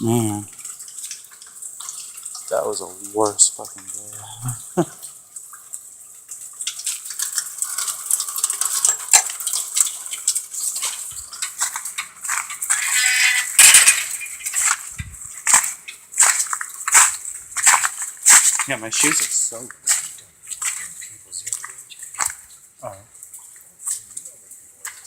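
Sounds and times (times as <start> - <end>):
footsteps splashing through water: 14.5 - 22.5.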